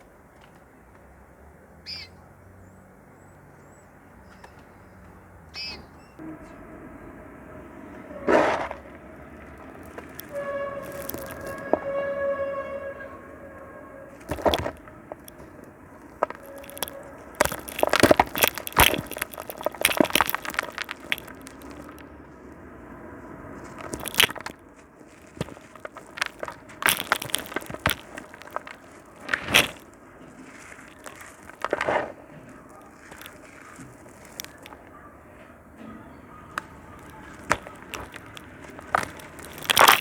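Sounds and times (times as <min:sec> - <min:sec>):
concrete crunching and cracking: 0:08.2 - 0:12.7, 0:14.1 - 0:35.5, 0:36.4 - 0:40.0.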